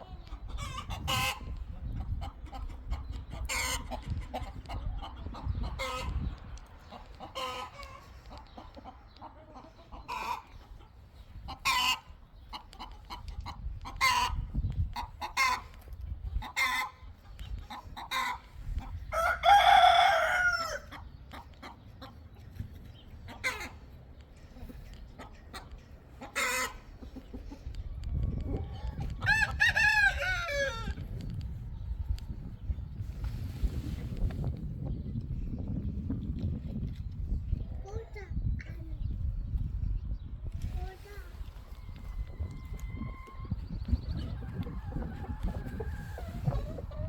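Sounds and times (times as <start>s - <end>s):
chickens clucking: 0.0s - 47.0s
rooster crowing: 19.2s - 20.9s.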